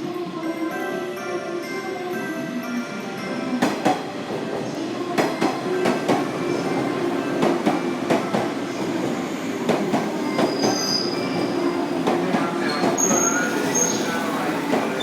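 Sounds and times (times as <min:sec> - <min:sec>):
high wheel squeals: 0:10.2 - 0:15.0.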